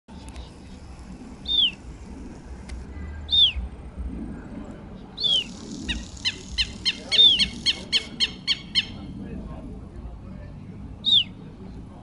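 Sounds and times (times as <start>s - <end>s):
low steady rumble: 0.1s - 12.0s.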